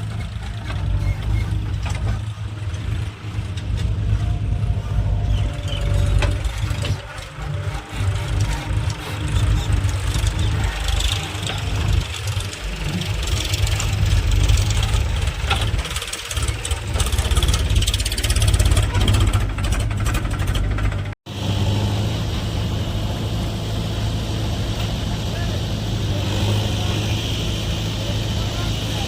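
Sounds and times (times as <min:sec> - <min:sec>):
clattering work noise: 0:00.0 - 0:21.2
heavy diesel engine running: 0:00.0 - 0:29.0.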